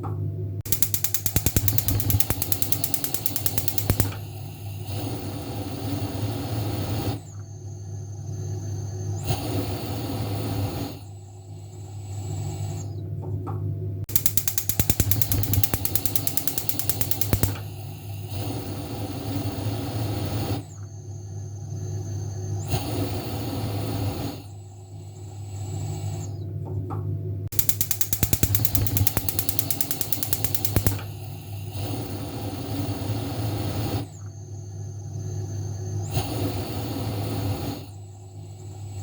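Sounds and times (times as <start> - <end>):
steady low hum: 0.4 - 12.3, 14.1 - 25.3
gas stove igniter clicking: 0.7 - 7.2, 14.1 - 20.6, 27.5 - 34.2
gas flame hissing: 0.7 - 12.9, 14.1 - 26.3, 27.5 - 39.0.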